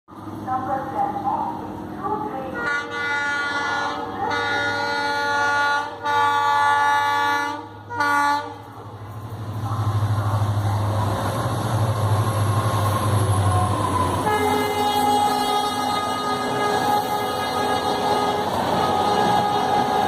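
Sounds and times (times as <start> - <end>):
train rumble: 0.1 - 20.0
locomotive air horn blasts: 2.6 - 8.6, 14.2 - 20.0.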